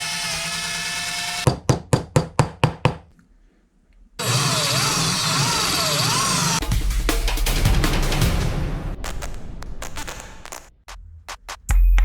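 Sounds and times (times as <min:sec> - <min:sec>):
power tool running: 0:00.0 - 0:01.5, 0:04.2 - 0:06.6.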